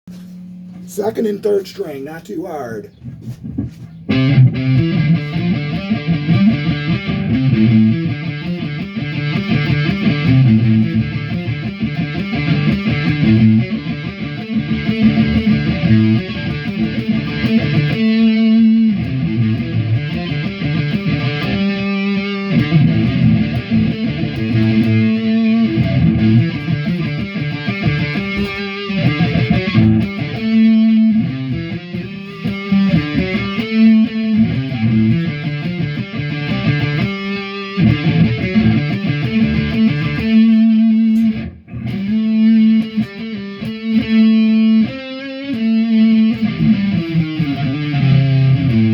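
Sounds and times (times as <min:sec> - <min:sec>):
electric guitar heavy metal riff: 0:04.1 - 0:48.9.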